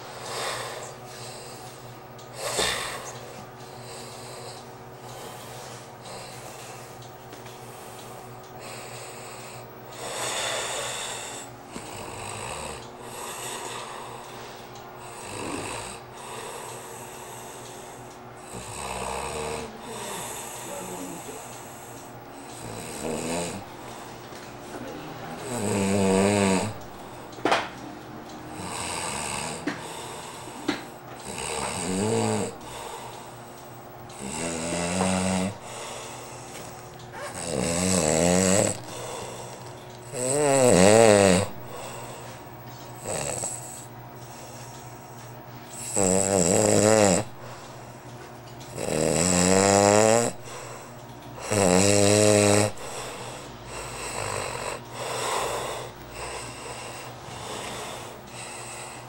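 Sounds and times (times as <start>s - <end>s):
person snoring: 2.4s - 3.2s, 8.6s - 14.3s, 15.0s - 17.8s, 18.4s - 21.8s, 22.4s - 23.7s, 25.4s - 26.9s, 28.6s - 33.1s, 34.1s - 42.3s, 43.0s - 44.5s, 45.7s - 47.6s, 48.7s - 59.0s.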